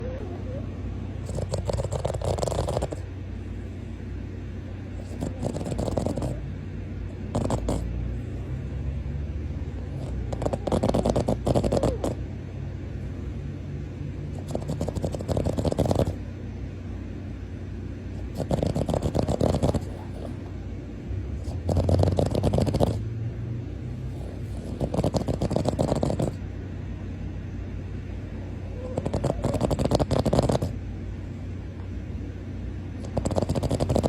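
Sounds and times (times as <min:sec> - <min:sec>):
dog snoring: 0:01.2 - 0:03.1, 0:05.0 - 0:06.5, 0:07.1 - 0:08.7, 0:09.8 - 0:12.2, 0:14.3 - 0:16.2, 0:18.1 - 0:20.6, 0:21.3 - 0:23.2, 0:23.9 - 0:26.4, 0:28.6 - 0:30.8, 0:33.0 - 0:34.0.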